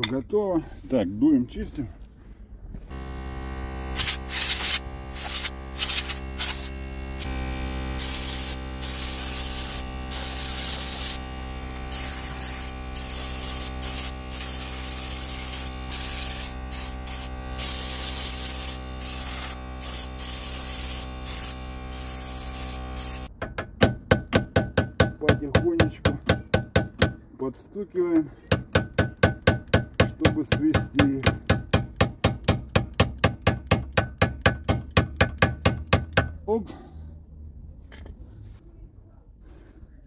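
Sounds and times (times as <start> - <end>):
electric air blower running: 2.9 - 23.3
short blasts of air: 3.9 - 7.3, 8.0 - 11.2, 11.9 - 23.3.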